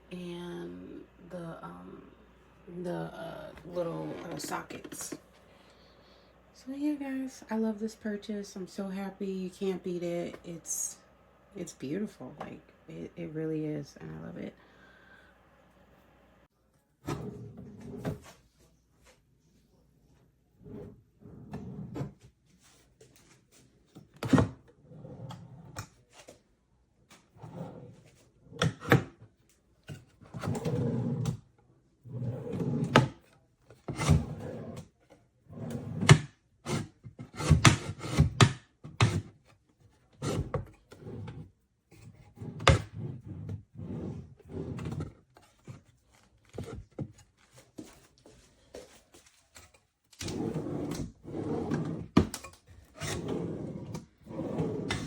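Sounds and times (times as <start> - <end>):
wooden drawers sliding open and shut: 50.2 - 55.0.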